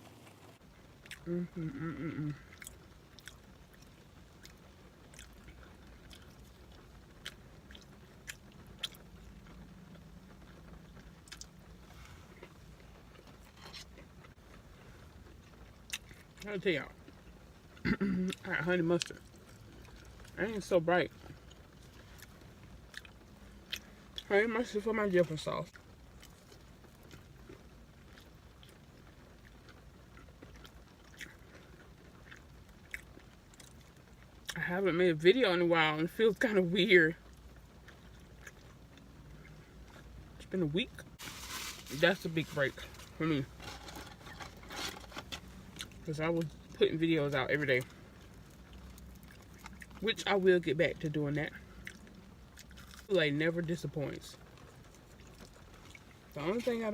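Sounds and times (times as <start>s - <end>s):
low steady hum: 0.0s - 56.9s
wet chewing and mouth smacking: 2.3s - 9.6s, 47.8s - 50.0s, 51.7s - 53.1s, 54.4s - 56.4s
faint chewing: 25.7s - 34.6s, 41.1s - 46.8s, 51.6s - 53.1s, 54.4s - 56.8s.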